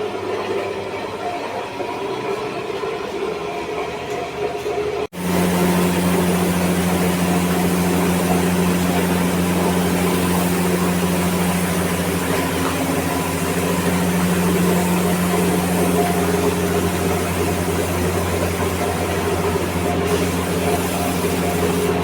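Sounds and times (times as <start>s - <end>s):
machine motor humming: 5.1s - 22.0s
steady hiss: 5.2s - 22.0s.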